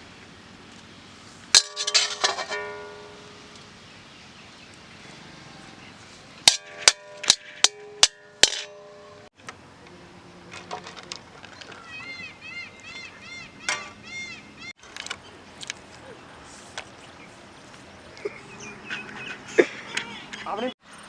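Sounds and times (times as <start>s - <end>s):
metal ladle clanging on steel pot: 1.6s - 3.6s, 6.4s - 9.3s.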